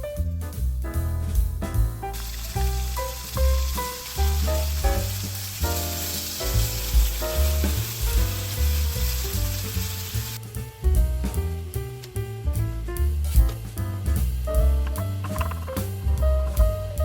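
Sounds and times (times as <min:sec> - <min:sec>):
background music: 0:00.0 - 0:17.0
food sizzling in oil: 0:02.1 - 0:10.4.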